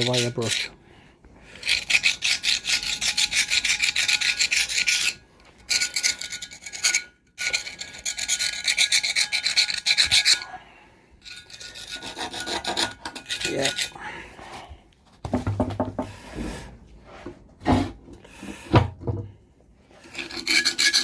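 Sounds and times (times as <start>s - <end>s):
scrubbing metal screw: 0.0s - 0.8s, 1.6s - 10.4s, 11.2s - 14.0s, 20.0s - 21.0s.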